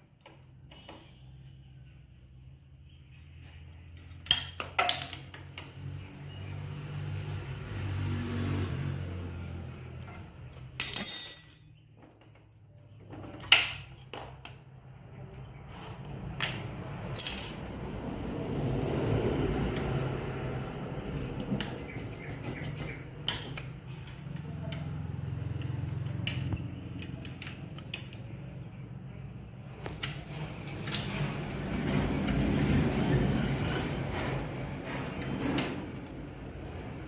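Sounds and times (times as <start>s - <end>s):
metal clinking and knocking: 10.6s - 12.5s, 17.2s - 17.8s.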